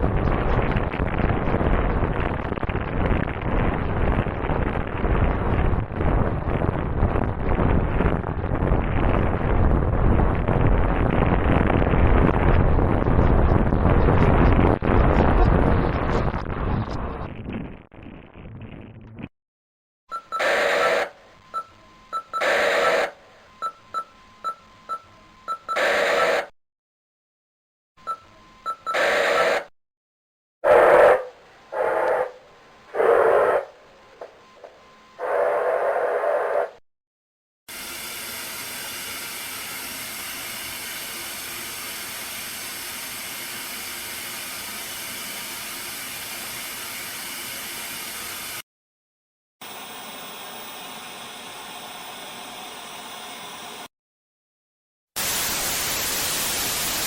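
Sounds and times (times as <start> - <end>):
small beeps: 20.1 - 26.4, 28.0 - 29.6
bursts of static: 20.4 - 21.2, 22.4 - 23.2, 25.8 - 26.5, 28.9 - 29.7.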